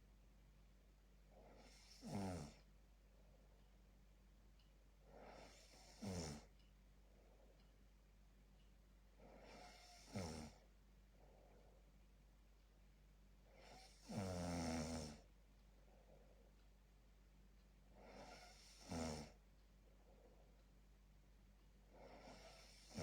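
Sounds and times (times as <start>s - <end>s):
person snoring: 1.5s - 2.6s, 5.1s - 6.5s, 9.2s - 10.6s, 13.6s - 15.3s, 18.0s - 19.4s, 21.9s - 23.0s.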